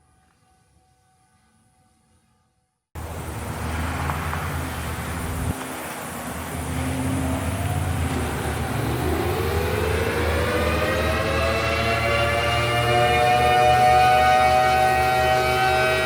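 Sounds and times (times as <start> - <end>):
steady outdoor rumble: 3.0 - 16.0
warning siren winding up: 7.3 - 16.0.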